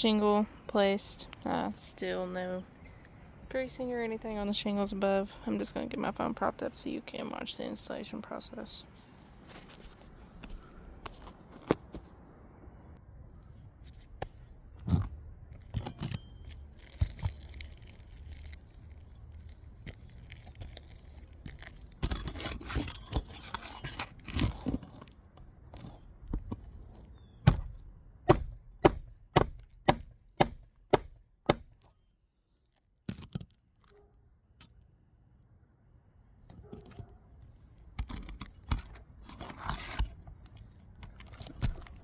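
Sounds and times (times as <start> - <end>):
scraping and rustling: 9.0 - 12.2, 13.7 - 27.1, 36.6 - 42.0.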